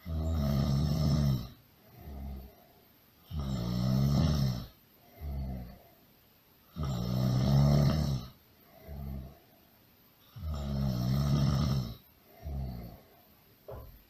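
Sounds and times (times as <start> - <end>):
loud snoring: 0.0 - 2.6, 3.3 - 5.9, 6.7 - 9.4, 10.3 - 13.2
breath: 8.6 - 9.8.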